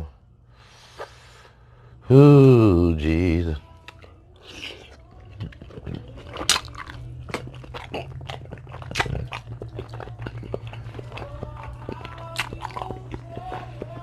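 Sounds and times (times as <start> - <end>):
steady low hum: 0.0 - 14.0
wet chewing and crunching: 3.1 - 14.0
crab shell cracking: 3.8 - 14.0.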